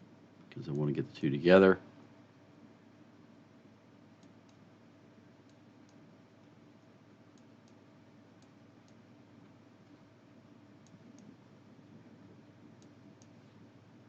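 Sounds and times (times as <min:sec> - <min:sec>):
low room hum: 0:00.0 - 0:14.0
computer mouse clicks: 0:04.2 - 0:04.6, 0:05.4 - 0:06.6, 0:07.3 - 0:10.0, 0:10.8 - 0:11.4, 0:12.7 - 0:13.5.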